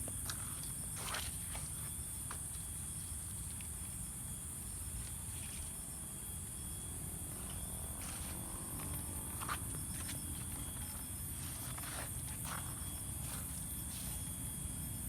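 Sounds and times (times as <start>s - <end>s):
crunching footsteps: 0.0s - 2.7s, 7.3s - 14.4s
crickets chirping: 0.0s - 15.0s.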